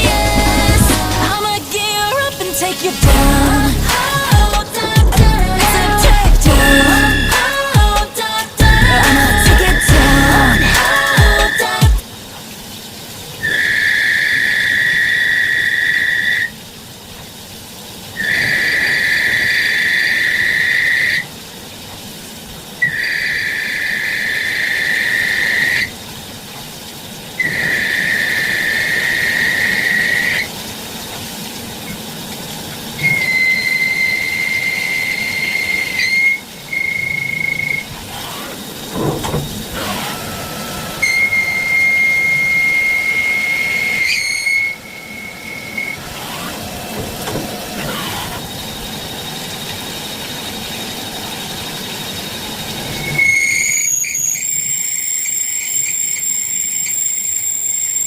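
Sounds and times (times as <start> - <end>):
shrill high whine: 0.0 - 12.3, 13.4 - 16.6, 18.2 - 21.4, 22.8 - 26.0, 27.4 - 30.8, 33.0 - 58.0
machine noise: 0.0 - 58.0
lathe tool squealing: 3.4 - 7.8, 8.8 - 11.9, 33.0 - 58.0.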